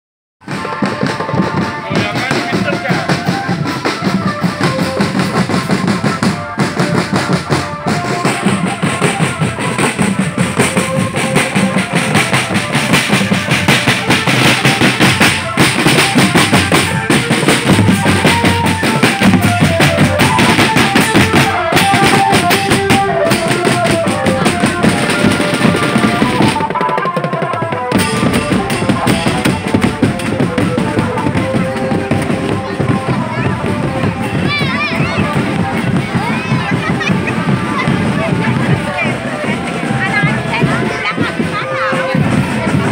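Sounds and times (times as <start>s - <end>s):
snare and bass drums: 0.4s - 42.9s
melody line: 6.2s - 36.0s.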